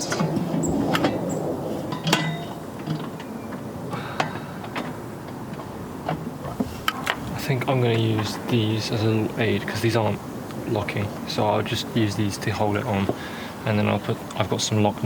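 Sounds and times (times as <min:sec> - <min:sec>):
metal parts and tools clinking: 0:01.9 - 0:03.2.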